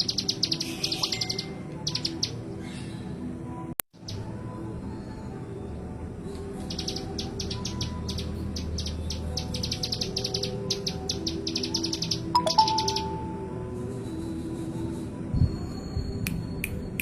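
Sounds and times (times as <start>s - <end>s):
bird singing sharp ticking notes: 6.7s - 13.4s.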